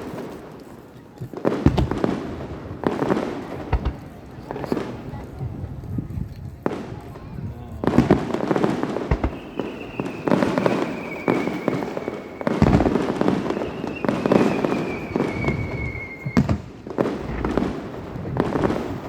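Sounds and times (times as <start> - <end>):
fireworks booming: 0.0 - 19.0
fireworks crackling: 0.0 - 19.0
descending firework whistle: 7.8 - 17.8.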